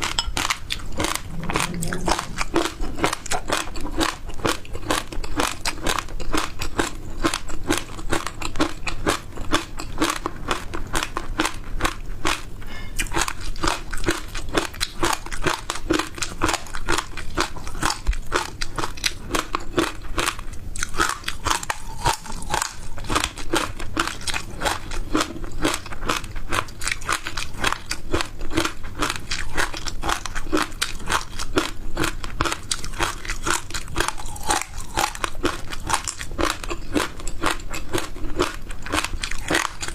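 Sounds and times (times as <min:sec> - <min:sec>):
chewing crunchy ice: 0:00.0 - 0:39.9.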